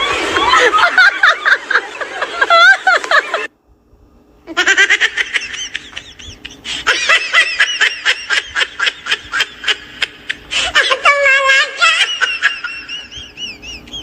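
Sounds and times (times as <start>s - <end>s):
high-pitched giggling: 4.5s - 14.0s.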